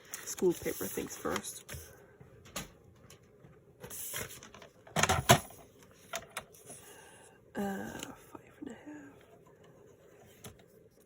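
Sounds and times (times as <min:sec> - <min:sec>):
paper rustling: 0:00.0 - 0:01.9.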